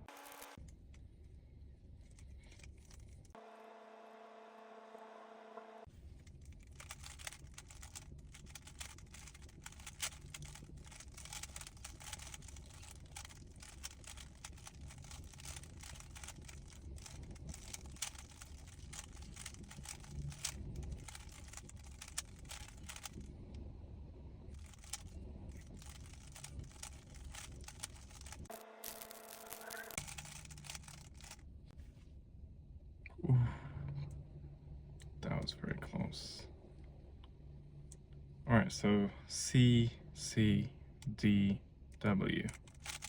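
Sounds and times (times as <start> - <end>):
puzzle cube clicking: 6.7 - 23.2, 24.6 - 31.4, 42.4 - 43.0.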